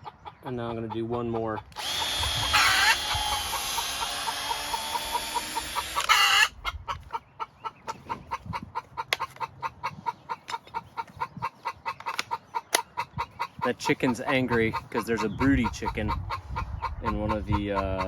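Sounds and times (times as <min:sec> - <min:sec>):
chicken clucking rapidly: 0:00.0 - 0:18.0
chicken squawking: 0:00.0 - 0:18.0
power drill boring: 0:01.8 - 0:06.5.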